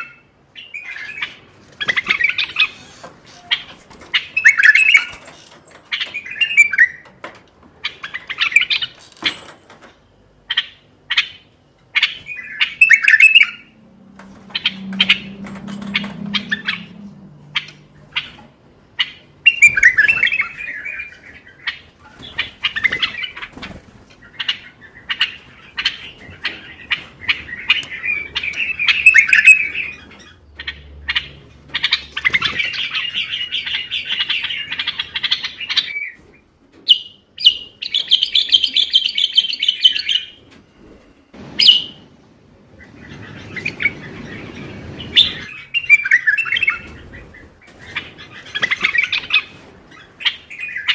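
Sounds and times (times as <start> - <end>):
bird warbling: 10.5 - 23.6, 24.2 - 36.1
sharp bird chirps: 12.0 - 13.8.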